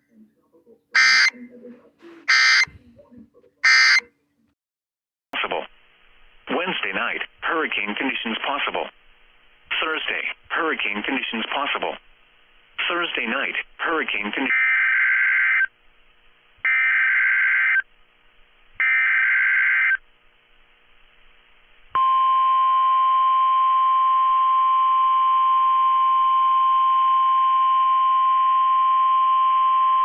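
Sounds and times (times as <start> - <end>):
screeching data bursts: 1.0 - 1.3, 2.3 - 2.7, 3.6 - 4.0, 14.4 - 15.7, 16.7 - 17.9, 18.8 - 20.0
weather radio alert tone: 1.0 - 1.4, 2.3 - 2.8, 3.6 - 4.1.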